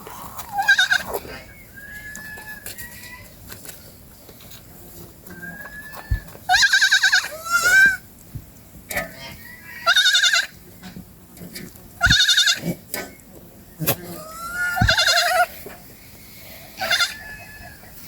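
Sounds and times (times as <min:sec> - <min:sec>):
goats bleating: 0:00.3 - 0:01.2, 0:09.8 - 0:10.5, 0:12.0 - 0:12.8, 0:13.9 - 0:15.6, 0:16.8 - 0:17.4.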